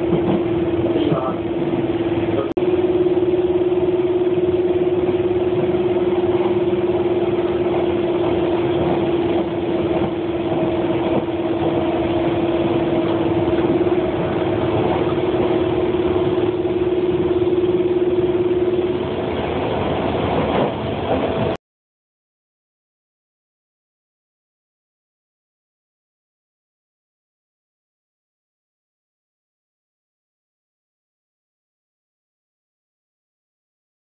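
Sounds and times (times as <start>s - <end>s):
constant humming tone: 0.0s - 21.6s
train rumble inside carriage: 0.0s - 21.6s.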